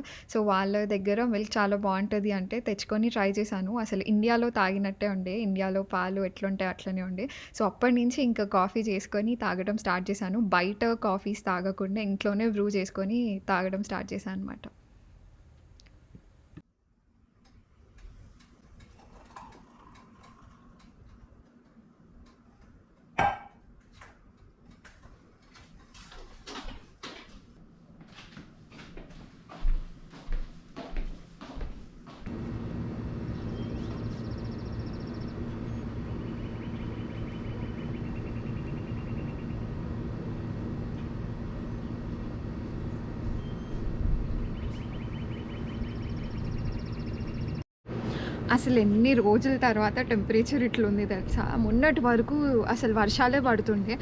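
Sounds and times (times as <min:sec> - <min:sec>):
steady low rumble: 0:32.3 - 0:54.0.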